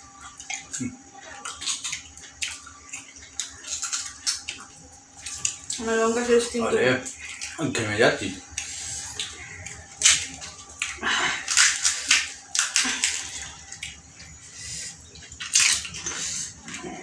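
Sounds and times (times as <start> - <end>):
sharp hissing breaths: 8.6 - 9.4, 14.4 - 15.1, 16.0 - 16.7.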